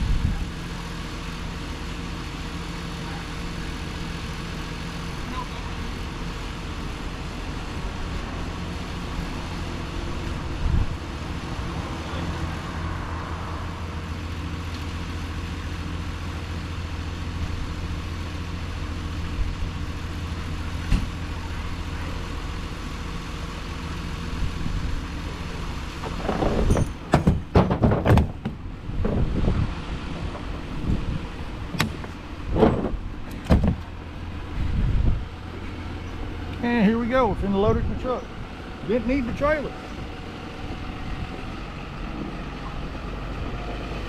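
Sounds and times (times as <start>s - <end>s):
engine idling: 0.0s - 27.6s
irregular knocks and clatter: 26.0s - 29.3s, 31.7s - 33.9s.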